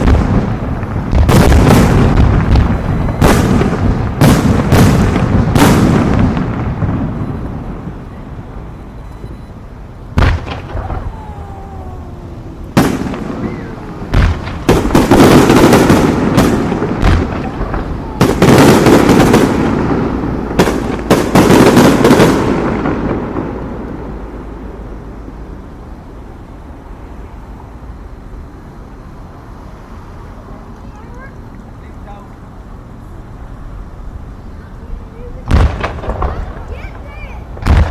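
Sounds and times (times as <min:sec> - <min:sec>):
firework crackling bursts: 0:00.0 - 0:08.9, 0:09.5 - 0:27.2, 0:32.3 - 0:37.9
firework shells banging: 0:10.1 - 0:24.0, 0:35.5 - 0:37.9.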